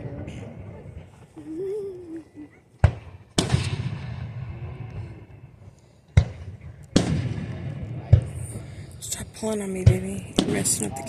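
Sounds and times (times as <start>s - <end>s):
fireworks boom with rumbling echo: 2.8s - 11.0s.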